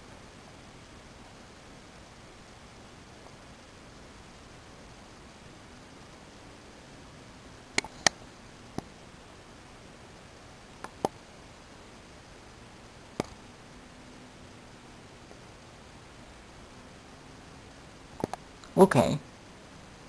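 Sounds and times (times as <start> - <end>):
computer mouse clicking: 18.2 - 18.4.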